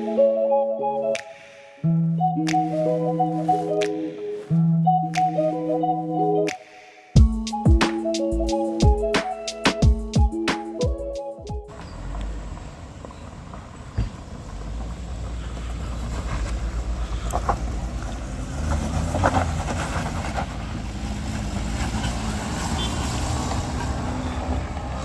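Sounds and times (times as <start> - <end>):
vehicle driving on road: 11.7 - 25.0.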